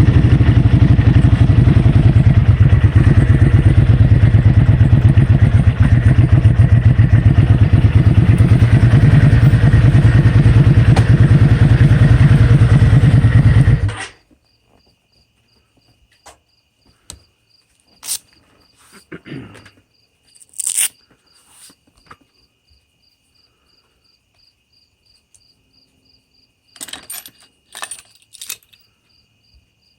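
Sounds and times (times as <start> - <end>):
loud engine pulsing: 0.0 - 14.2
insects trilling: 28.6 - 29.9.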